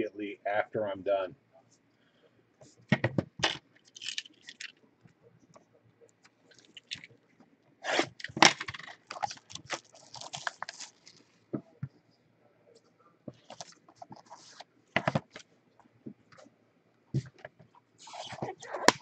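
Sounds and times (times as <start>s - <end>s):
packaging crinkling and tearing: 8.0s - 11.2s.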